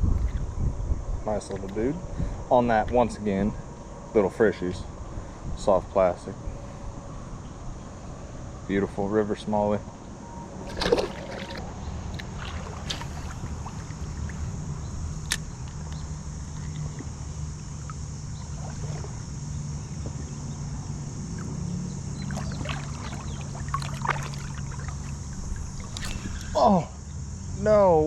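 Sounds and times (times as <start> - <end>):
river current rushing: 10.6 - 14.8.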